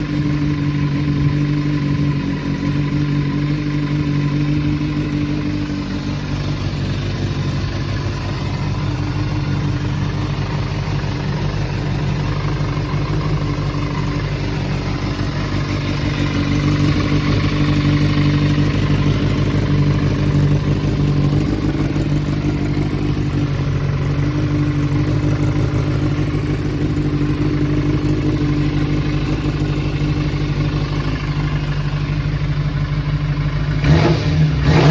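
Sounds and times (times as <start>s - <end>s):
motorcycle engine idling: 0.0s - 34.9s.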